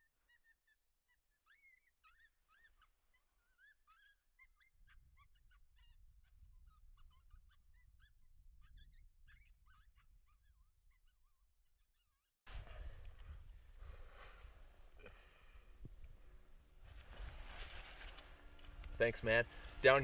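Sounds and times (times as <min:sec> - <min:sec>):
low rumble of wind: 0:12.5 - 0:20.0.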